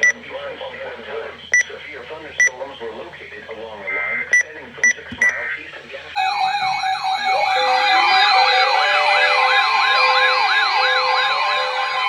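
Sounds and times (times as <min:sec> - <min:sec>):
electronic sirens yelping: 0:06.2 - 0:12.0.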